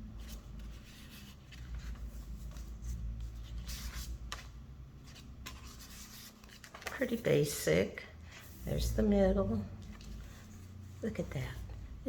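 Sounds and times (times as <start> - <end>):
paper pages rustling: 0.0 - 7.7, 9.7 - 10.9
low steady rumble: 8.0 - 12.0.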